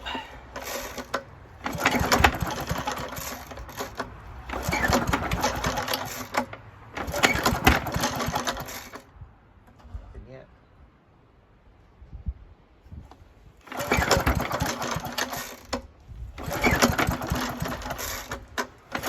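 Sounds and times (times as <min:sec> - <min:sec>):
mower engine cranking: 0:00.0 - 0:09.1, 0:13.6 - 0:19.0.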